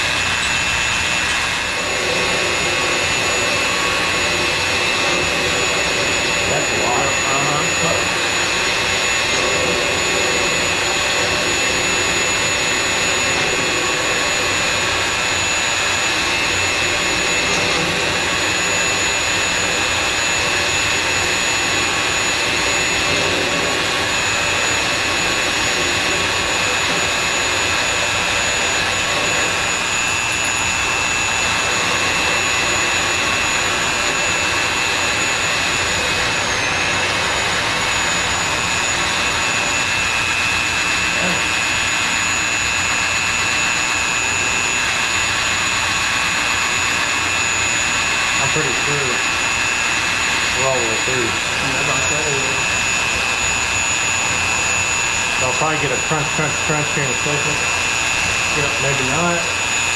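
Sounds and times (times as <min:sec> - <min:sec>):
electric drill whining into steel: 0:00.0 - 0:59.9.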